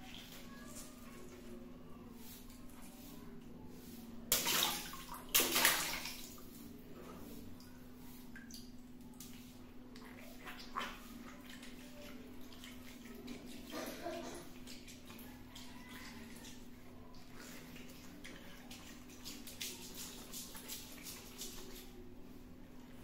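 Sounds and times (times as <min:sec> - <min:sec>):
water splashing: 0:04.3 - 0:06.4.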